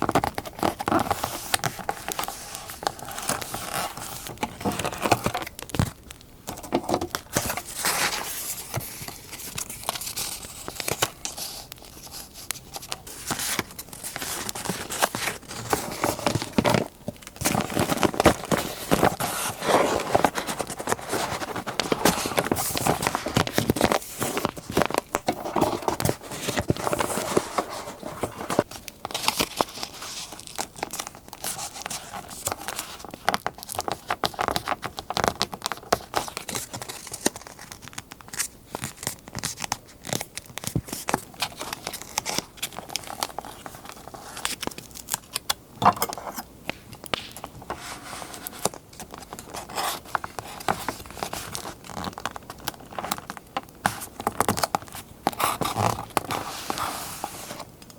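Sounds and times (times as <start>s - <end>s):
paper crinkling and tearing: 0.0s - 57.8s.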